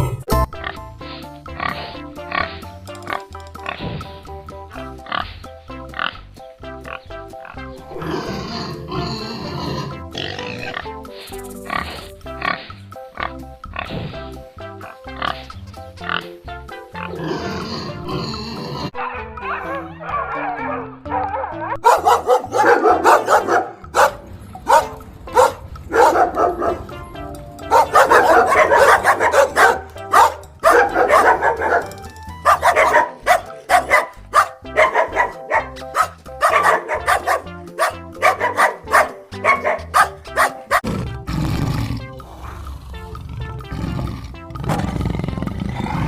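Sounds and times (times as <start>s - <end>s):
background music with bass line: 0.0s - 46.0s
dog barking: 19.4s - 26.9s, 27.6s - 40.9s.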